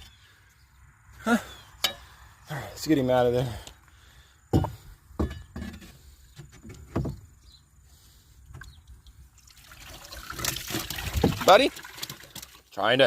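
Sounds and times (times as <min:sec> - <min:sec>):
dull knocks in water tank: 0:10.8 - 0:11.5.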